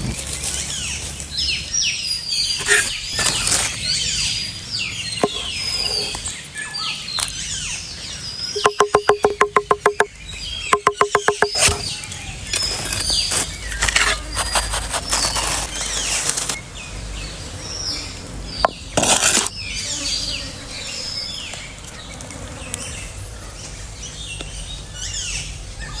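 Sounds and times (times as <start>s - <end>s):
songbirds chirping: 0.1s - 26.0s
rustling and crackling: 2.6s - 3.9s, 11.5s - 16.6s.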